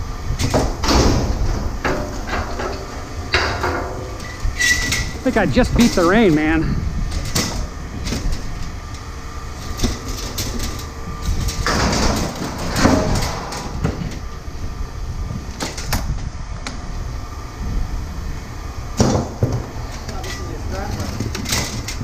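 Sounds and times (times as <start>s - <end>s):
steady low rumble: 0.0s - 22.0s
scraping metal clatter: 9.6s - 14.2s.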